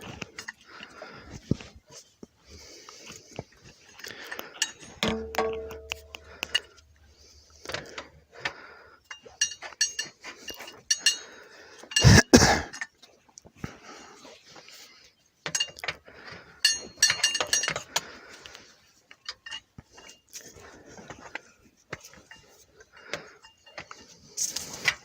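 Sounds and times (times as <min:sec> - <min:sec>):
metal tools clinking on metal fittings: 0:03.8 - 0:06.8, 0:09.0 - 0:13.0, 0:15.4 - 0:16.0, 0:16.6 - 0:18.2, 0:19.0 - 0:25.0
ringing metal clank: 0:05.0 - 0:06.2.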